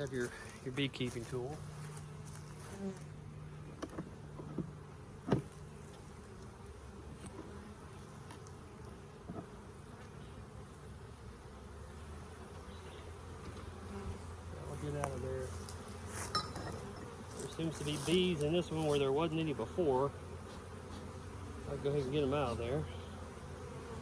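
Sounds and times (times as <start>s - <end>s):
honeybees buzzing: 0.0s - 24.0s
clicks and knocks at hive: 3.6s - 6.5s.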